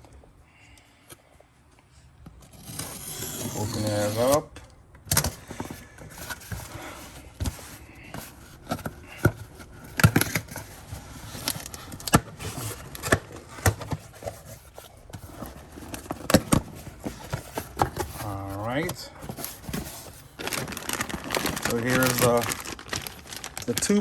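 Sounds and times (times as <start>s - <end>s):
box contents scraping and knocking: 5.4s - 24.0s
packaging rustling: 5.4s - 24.0s.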